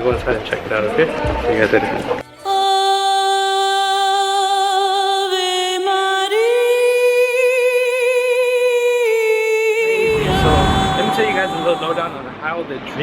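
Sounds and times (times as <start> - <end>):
high voice singing held notes: 9.9 - 12.2.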